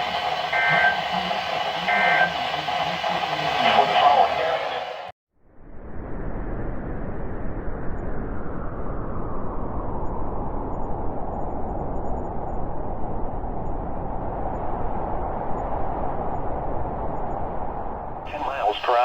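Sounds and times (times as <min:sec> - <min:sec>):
radio static hiss: 0:18.3 - 0:19.0.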